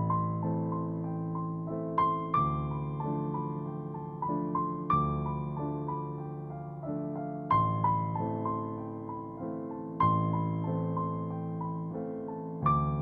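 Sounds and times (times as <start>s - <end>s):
gentle piano piece: 0.0s - 13.0s.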